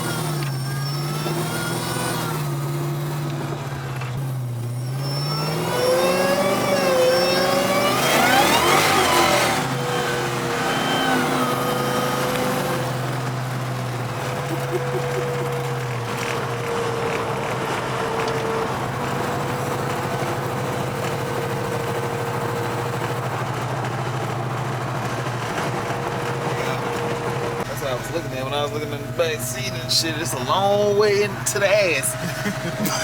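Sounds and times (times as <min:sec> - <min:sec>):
car engine droning: 0:00.0 - 0:33.0
supercharger whine: 0:00.0 - 0:33.0.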